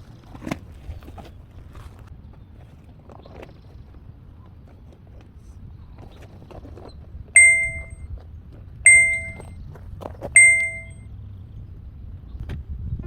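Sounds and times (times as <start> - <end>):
bell-like ding chime: 7.4 - 8.0, 8.9 - 9.5, 10.4 - 10.9.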